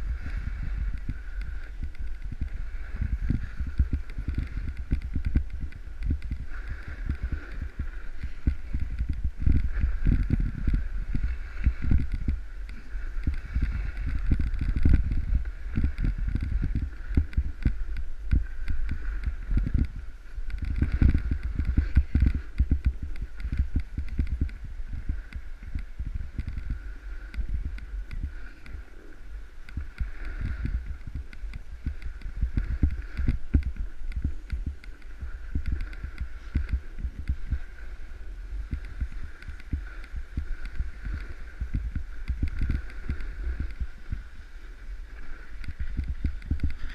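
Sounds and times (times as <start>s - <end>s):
snowboard riding over snow: 0.0s - 46.9s
wind buffeting microphone: 0.0s - 46.9s.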